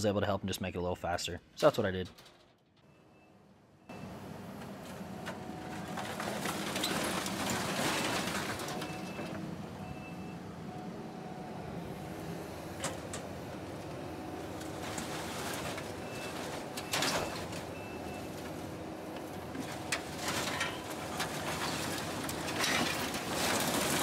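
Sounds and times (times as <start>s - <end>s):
diesel engine running: 3.9s - 24.0s
scrap metal clanks: 19.6s - 24.0s.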